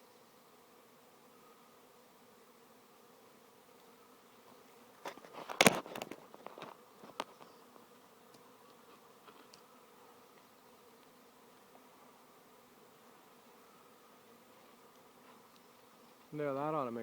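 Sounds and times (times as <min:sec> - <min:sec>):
bees humming: 0:00.0 - 0:17.0
knocks and rustling: 0:05.0 - 0:07.4.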